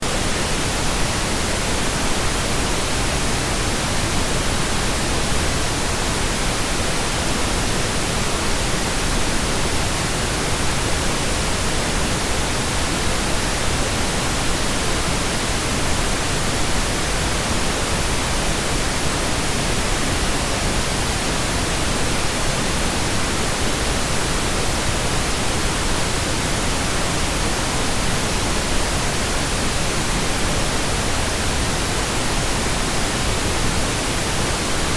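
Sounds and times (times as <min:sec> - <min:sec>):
pink noise hiss: 0:00.0 - 0:34.9.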